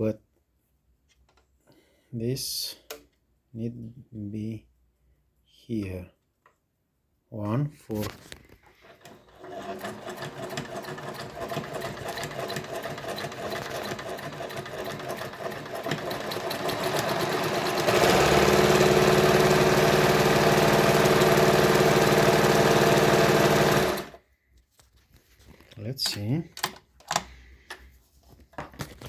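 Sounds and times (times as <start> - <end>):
sewing machine stitching: 8.8 - 24.2.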